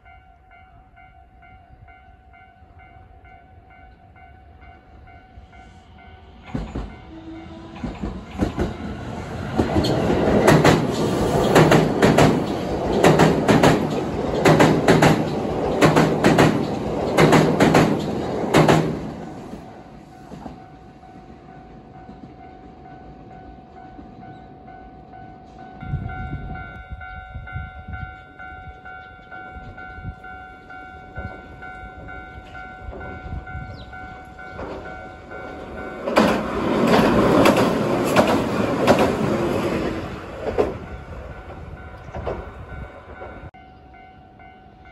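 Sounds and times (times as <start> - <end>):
electric train passing: 0.0 - 44.9
train wheels clattering over rail joints: 6.4 - 7.0, 7.7 - 19.7, 34.5 - 43.5.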